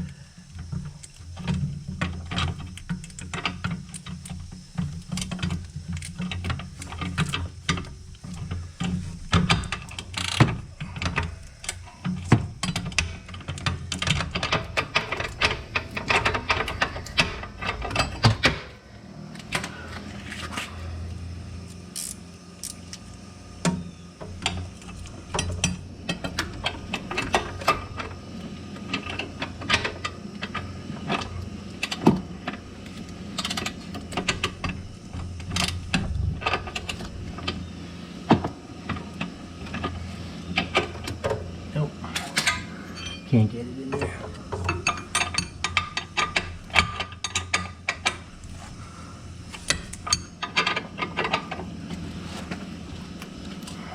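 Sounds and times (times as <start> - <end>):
low steady hum: 0.0 - 53.9
ratcheting wrench clicking: 21.7 - 23.0.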